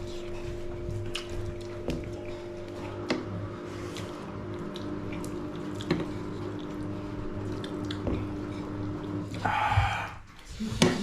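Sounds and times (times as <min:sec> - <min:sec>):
wet mouth eating noises: 0:04.0 - 0:08.1.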